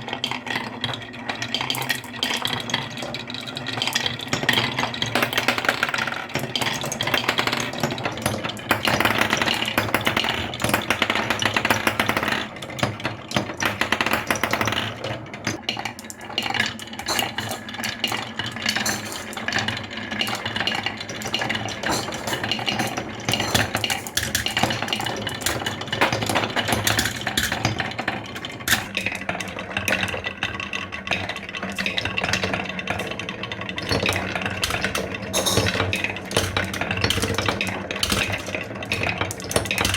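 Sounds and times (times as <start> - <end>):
marbles rolling down wooden run: 4.2 - 15.1.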